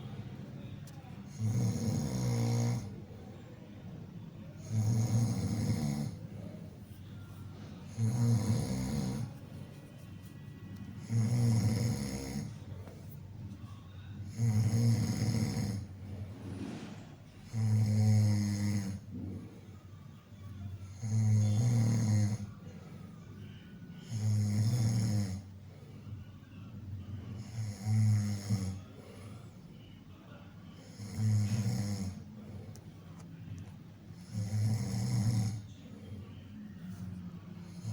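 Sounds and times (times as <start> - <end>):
quiet breathing: 0.0 - 37.9
loud low snores: 1.3 - 3.0, 4.6 - 6.3, 7.9 - 9.3, 11.0 - 12.6, 14.3 - 19.4, 20.9 - 22.5, 24.0 - 25.5, 27.4 - 28.9, 30.8 - 32.3, 34.2 - 35.7, 37.6 - 37.9.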